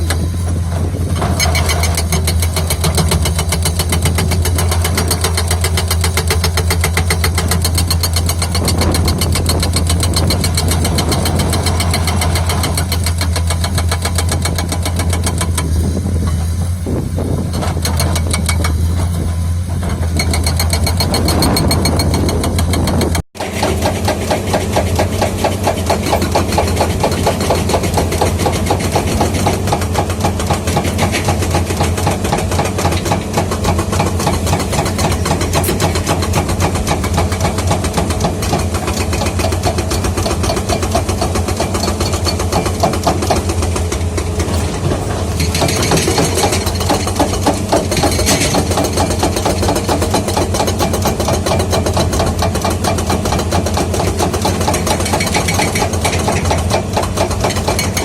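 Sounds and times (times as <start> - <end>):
excavator diesel engine running: 0.0 - 58.0.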